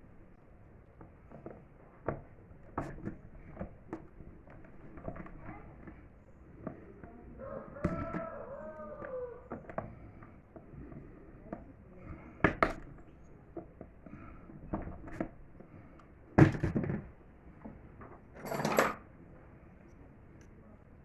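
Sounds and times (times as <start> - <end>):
objects knocking and clattering: 16.4 - 19.1.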